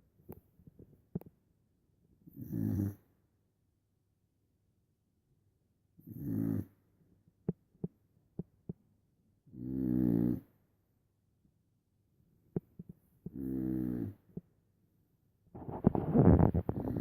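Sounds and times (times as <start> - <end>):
pet snoring: 2.2 - 3.1, 6.0 - 6.8, 9.5 - 10.5, 13.2 - 14.4, 15.6 - 17.0.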